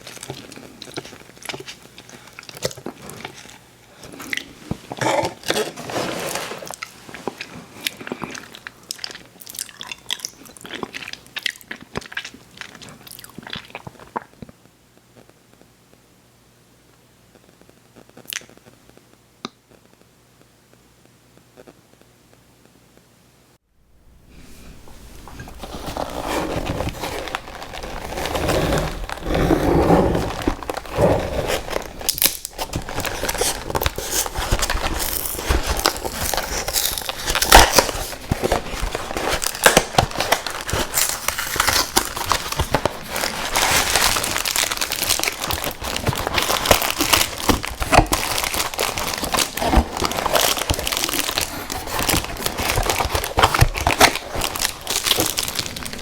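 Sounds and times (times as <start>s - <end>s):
chewing crunches: 25.1s - 56.0s.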